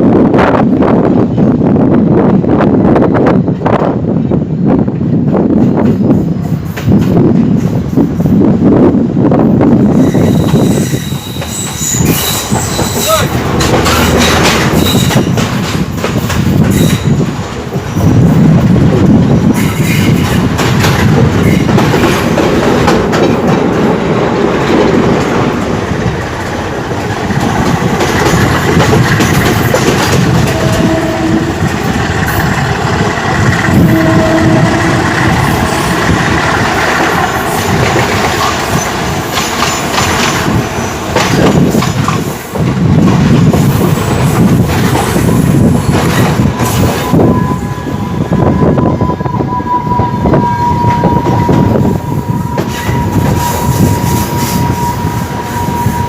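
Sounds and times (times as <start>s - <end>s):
high wheel squeal: 9.9s - 15.3s, 46.2s - 56.0s
train wheels clattering: 9.9s - 47.4s.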